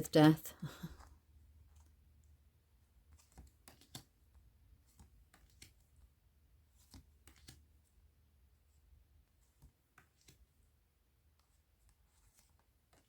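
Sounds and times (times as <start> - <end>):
cards clicking and tapping: 3.1 - 4.2, 4.8 - 5.8, 6.8 - 7.6.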